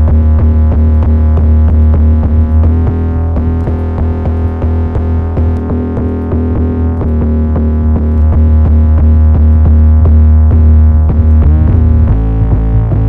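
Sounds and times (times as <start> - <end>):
drum-machine hits: 0.0 - 7.3
distorted bass: 0.0 - 13.0.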